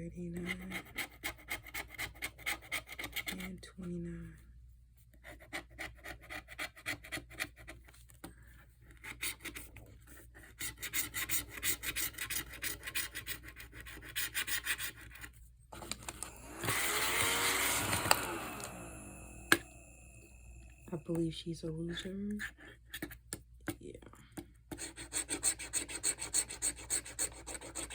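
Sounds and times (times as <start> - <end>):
scratching lottery ticket: 8.9 - 15.4, 24.7 - 27.9.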